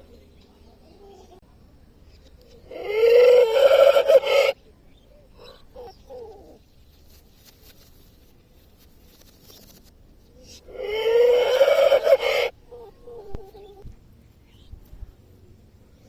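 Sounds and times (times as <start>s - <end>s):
rooster crowing: 2.8s - 4.6s, 10.8s - 12.5s.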